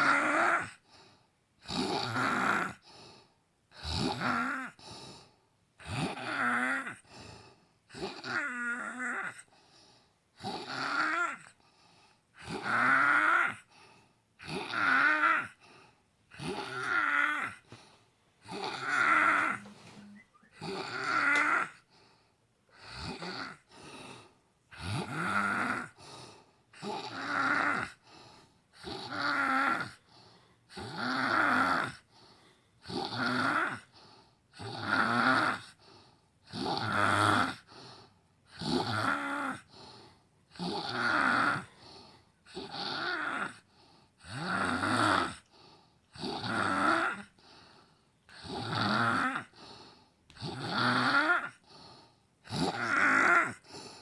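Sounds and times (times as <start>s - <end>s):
woman snoring: 0.0s - 0.8s, 1.6s - 2.8s, 3.7s - 4.8s, 5.8s - 7.1s, 7.9s - 9.5s, 10.4s - 11.6s, 12.4s - 13.7s, 14.4s - 15.6s, 16.3s - 17.6s, 18.4s - 21.8s, 22.7s - 23.7s, 24.7s - 26.0s, 26.8s - 28.0s, 28.8s - 30.1s, 30.7s - 32.1s, 32.8s - 33.9s, 34.6s - 35.8s, 36.5s - 37.7s, 38.6s - 39.7s, 40.5s - 41.8s, 42.5s - 45.5s, 46.1s - 47.4s, 48.3s - 49.6s, 50.4s - 51.8s, 52.4s - 54.0s.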